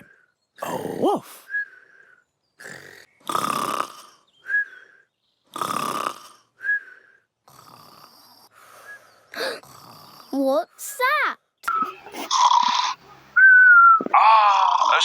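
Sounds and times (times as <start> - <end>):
cartoon rasping snores: 0.6 - 1.3, 2.6 - 4.9, 5.5 - 8.5, 9.3 - 10.8, 12.2 - 13.0, 14.5 - 15.0.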